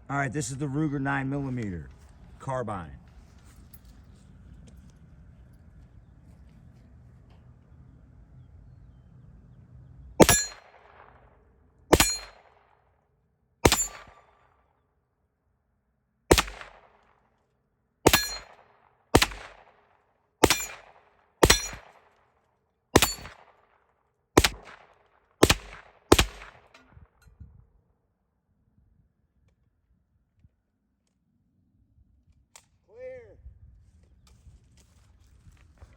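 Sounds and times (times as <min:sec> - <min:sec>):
gunshots: 0:10.2 - 0:11.3, 0:11.9 - 0:12.7, 0:13.6 - 0:14.4, 0:16.3 - 0:17.1, 0:18.1 - 0:22.1, 0:23.0 - 0:23.6, 0:24.4 - 0:26.8.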